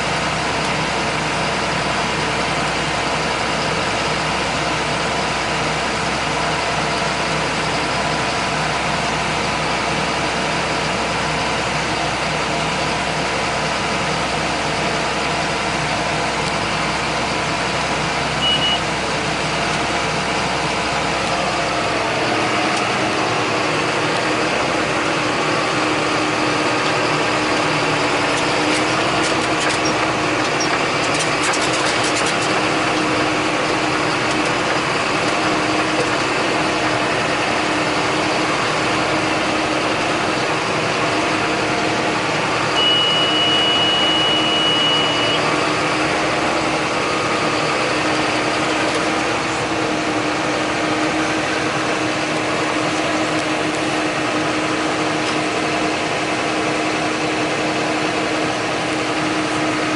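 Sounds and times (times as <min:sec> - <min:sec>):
tractor diesel engine running: 0:00.0 - 0:59.9
steady high beep: 0:18.4 - 0:18.9, 0:42.7 - 0:45.5.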